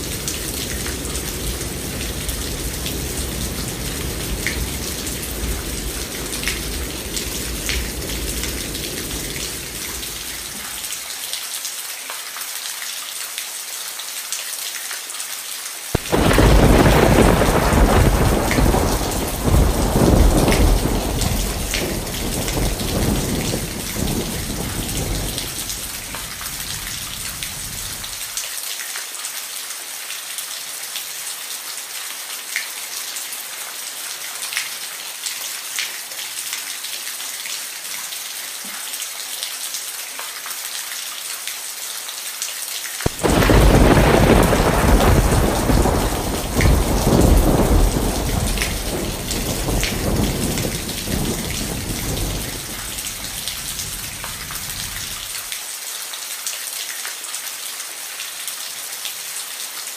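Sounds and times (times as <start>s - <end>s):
loud thunderclap: 0.0s - 10.8s, 16.0s - 28.2s, 43.1s - 55.4s
thunder rumbling: 0.0s - 10.9s, 16.0s - 28.3s, 43.1s - 55.4s
rain falling: 0.0s - 59.9s.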